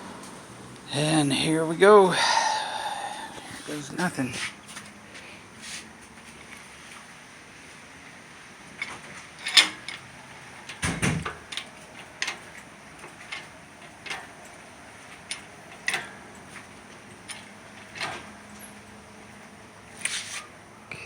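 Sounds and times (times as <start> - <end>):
engine hoist creaking and clunking: 8.0 - 20.8.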